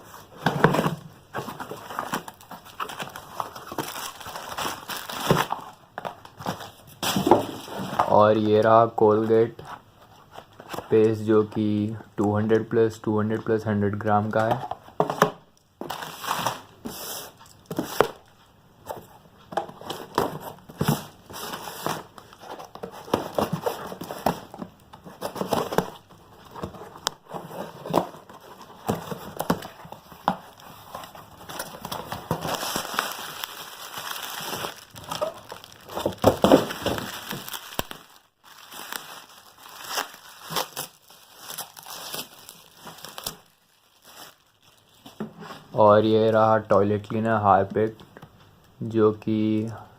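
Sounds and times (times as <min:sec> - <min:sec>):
plastic packaging crinkling: 0:00.6 - 0:08.6, 0:19.8 - 0:45.2.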